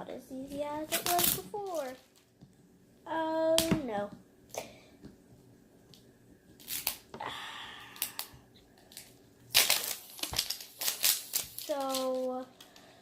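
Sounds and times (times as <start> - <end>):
plastic wrapping crinkling: 0.9 - 2.4, 8.1 - 12.8.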